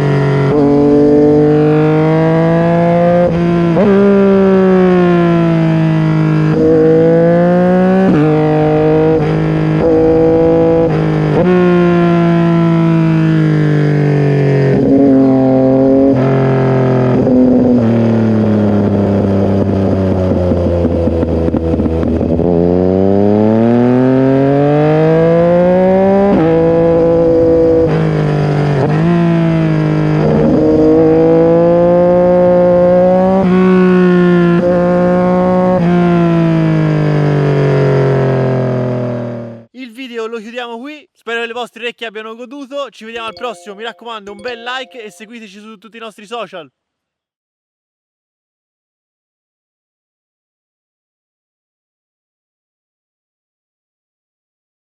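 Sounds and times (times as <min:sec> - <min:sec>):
motorcycle engine revving through gears: 0:00.0 - 0:39.7.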